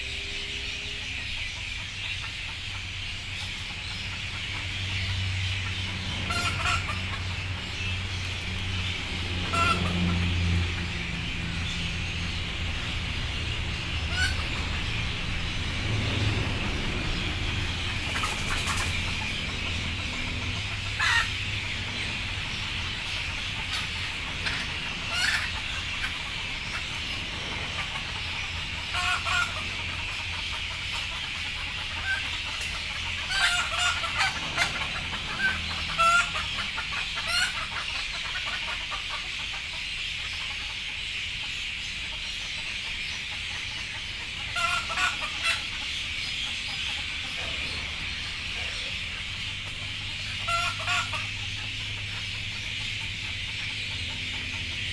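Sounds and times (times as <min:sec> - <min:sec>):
chickens clucking: 0:00.0 - 0:54.9.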